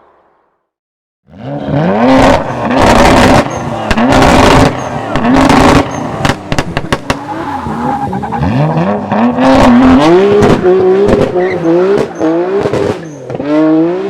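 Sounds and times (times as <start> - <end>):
car engine revving: 1.3 - 14.0
exhaust pops and crackles: 2.2 - 7.4, 9.1 - 13.5.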